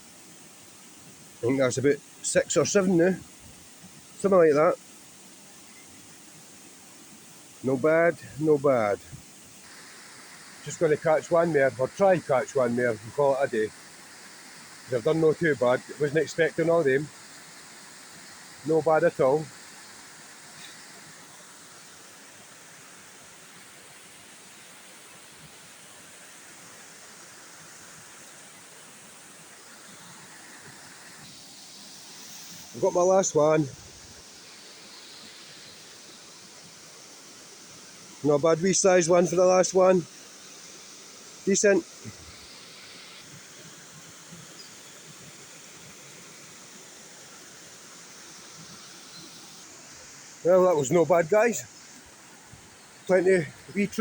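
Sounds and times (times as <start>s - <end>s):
stream water flowing: 0.0s - 54.0s.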